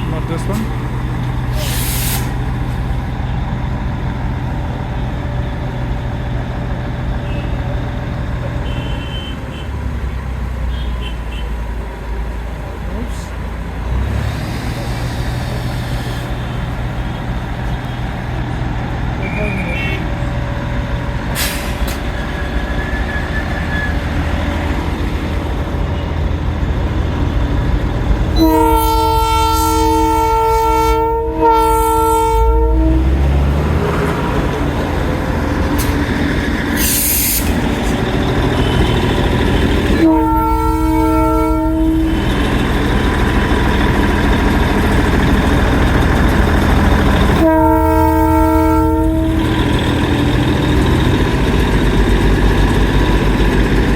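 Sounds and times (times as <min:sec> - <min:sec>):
low engine rumble: 0:00.0 - 0:53.9
train horn blasts: 0:08.6 - 0:09.7, 0:28.4 - 0:33.7, 0:39.8 - 0:42.6, 0:47.3 - 0:49.8.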